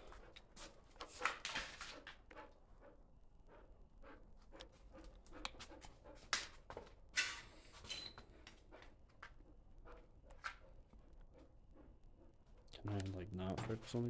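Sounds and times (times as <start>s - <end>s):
dog panting: 0.0s - 13.2s.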